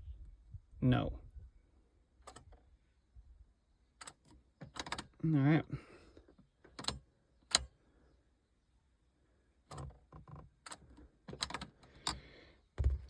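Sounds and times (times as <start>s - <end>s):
clicks and knocks in car cabin: 9.7s - 12.2s.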